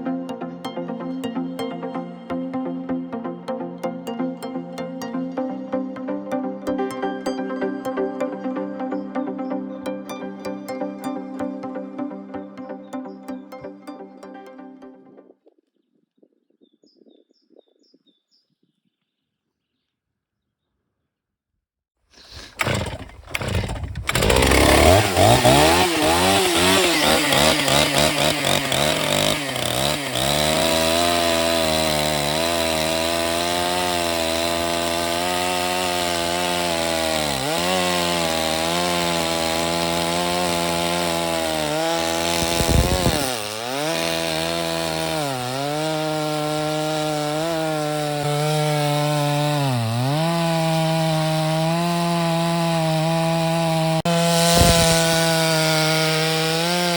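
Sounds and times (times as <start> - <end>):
chainsaw cutting log: 22.2 - 56.9.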